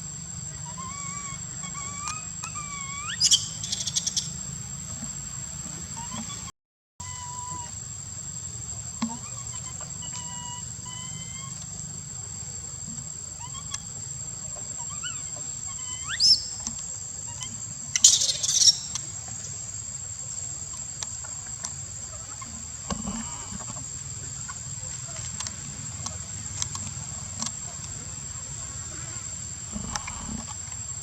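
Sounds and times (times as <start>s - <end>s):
high insect drone: 0.0s - 31.0s
baby monkey screaming: 0.6s - 4.3s, 6.0s - 7.8s, 9.2s - 11.6s, 13.4s - 13.8s, 14.8s - 16.6s, 17.3s - 18.9s.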